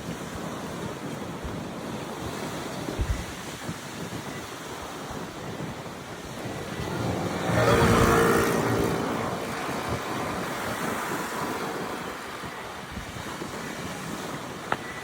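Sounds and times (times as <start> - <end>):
surf washing: 0.0 - 15.0
wind buffeting microphone: 0.0 - 15.0
passing vehicle: 5.7 - 15.0.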